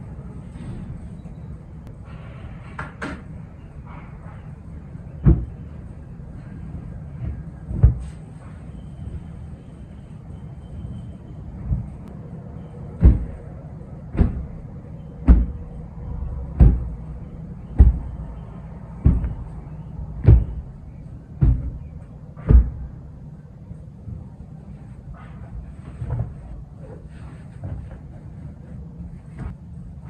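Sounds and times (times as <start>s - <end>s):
low steady hum: 0.0s - 30.0s
heavy thuds: 3.8s - 9.6s, 11.5s - 12.2s, 12.8s - 23.3s, 24.0s - 29.7s.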